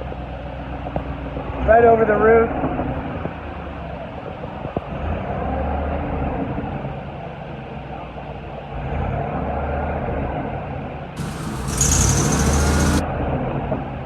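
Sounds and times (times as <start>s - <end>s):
truck engine low rumble: 11.2s - 13.0s.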